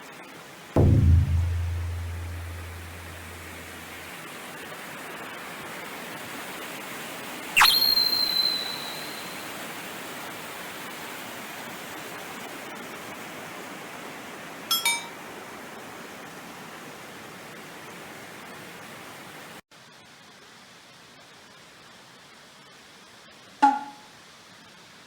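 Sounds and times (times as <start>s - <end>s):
sharp high tone: 0.8s - 3.9s, 7.6s - 9.4s
brief high chirps: 7.6s - 9.4s.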